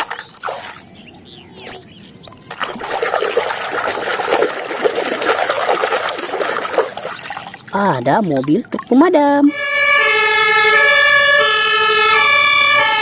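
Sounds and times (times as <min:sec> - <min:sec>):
running water splashing on plastic toy: 0:02.3 - 0:09.5.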